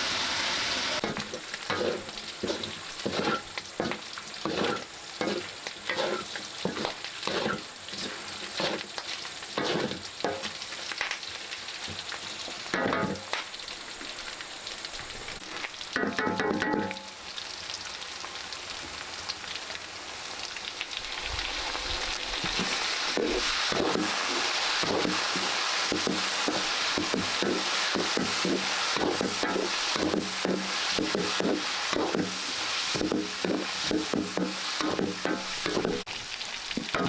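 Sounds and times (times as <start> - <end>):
utensil stirring in pan: 0.0 - 10.9, 21.0 - 37.0
food sizzling in a hot pan: 0.0 - 37.0.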